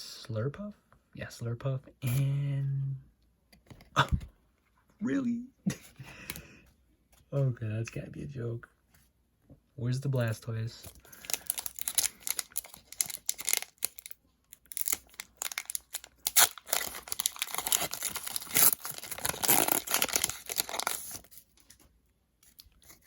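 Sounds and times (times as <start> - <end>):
foil wrapper tearing and crinkling: 11.0 - 21.7.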